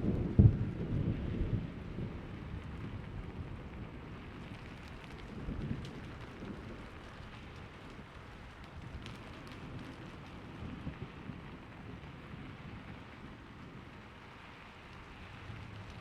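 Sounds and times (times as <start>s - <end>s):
thunder rumble: 0.0s - 7.0s
steady rain falling: 0.0s - 16.0s.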